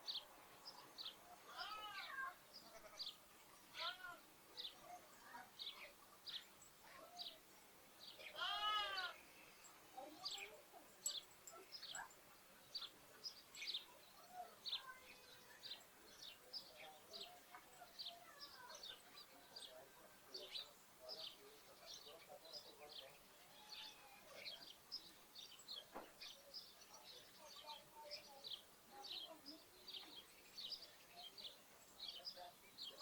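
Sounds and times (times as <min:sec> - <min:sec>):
sparrows chirping: 0:00.0 - 0:33.0
lamb bleating: 0:08.4 - 0:09.2, 0:23.5 - 0:24.2.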